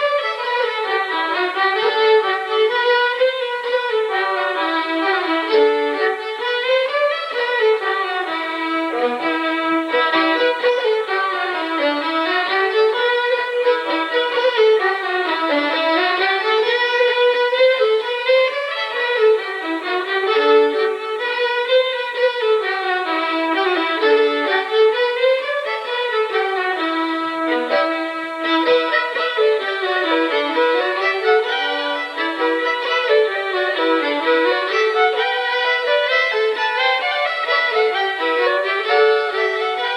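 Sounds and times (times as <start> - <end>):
fiddle playing lively tune: 0.0 - 39.9.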